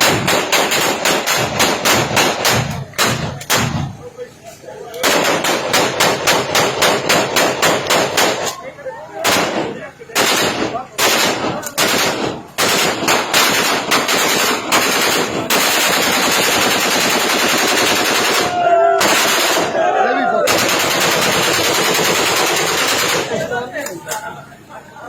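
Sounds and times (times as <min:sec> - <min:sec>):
rapid automatic gunfire: 0:00.0 - 0:04.0, 0:05.0 - 0:08.6, 0:09.2 - 0:19.9, 0:20.5 - 0:23.7
gunfire volleys: 0:00.0 - 0:04.1, 0:05.0 - 0:08.6, 0:09.2 - 0:19.8, 0:20.5 - 0:23.6
men shouting: 0:18.0 - 0:23.4.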